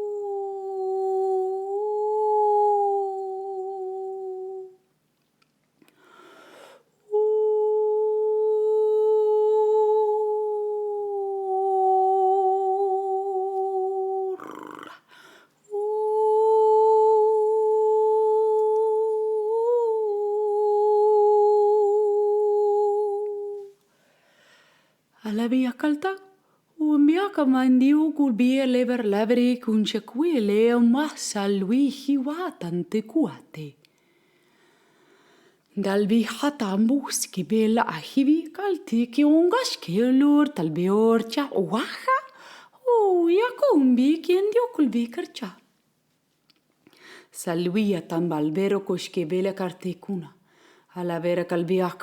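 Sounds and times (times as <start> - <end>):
woman humming: 0.0 - 4.8, 7.0 - 15.1, 15.7 - 23.8
breaths: 5.8 - 7.0, 14.9 - 15.7, 23.8 - 25.1, 33.9 - 35.7, 42.3 - 42.8, 46.8 - 47.4, 50.4 - 51.0.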